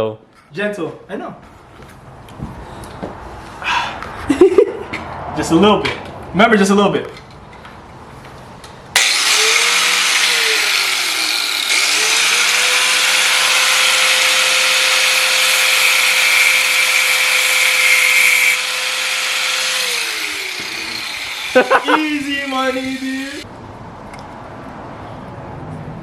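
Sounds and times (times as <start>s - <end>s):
power grinder grinding metal: 9.0s - 23.4s.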